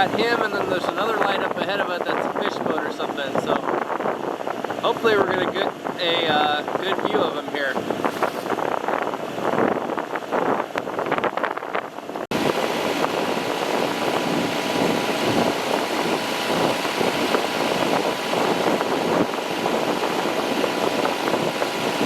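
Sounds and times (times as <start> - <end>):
boat engine running: 0.0 - 22.0.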